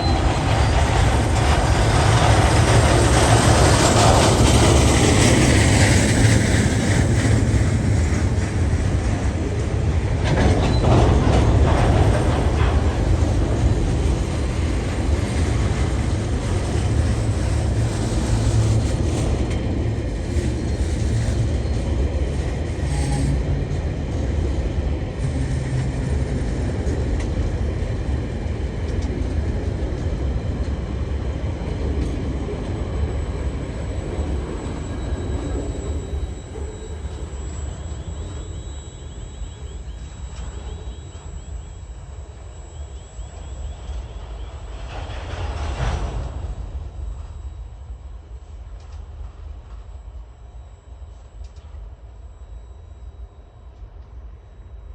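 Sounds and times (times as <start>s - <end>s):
train wheels clattering on rails: 0.0s - 37.4s.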